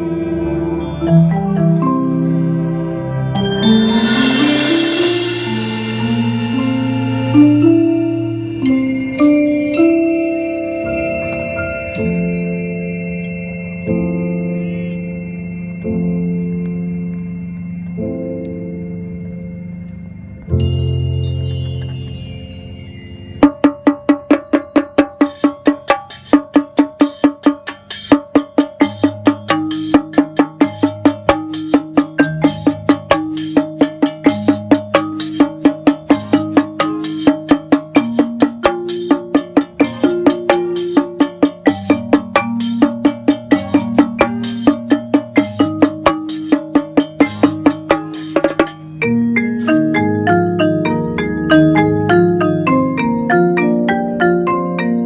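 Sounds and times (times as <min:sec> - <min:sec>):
percussive beat: 0:23.4 - 0:49.9
repeating pitched melody: 0:23.4 - 0:53.2.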